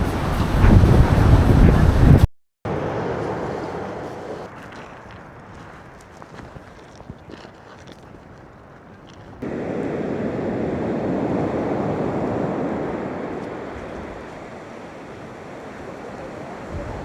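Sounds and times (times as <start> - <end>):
ocean surf breaking: 0.0 - 4.6, 9.4 - 17.0
wind on microphone: 0.0 - 17.0.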